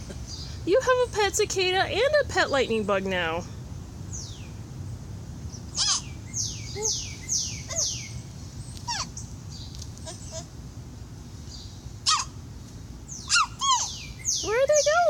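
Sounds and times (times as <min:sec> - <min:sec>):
low steady hum: 0:00.0 - 0:15.0
harsh bird calls: 0:05.5 - 0:10.5, 0:11.4 - 0:12.4, 0:13.1 - 0:15.0.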